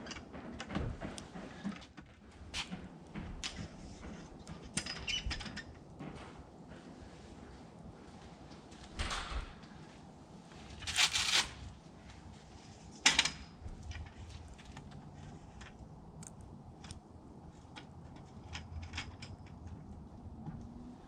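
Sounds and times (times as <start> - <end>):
metal legs scraping: 10.7 - 11.7.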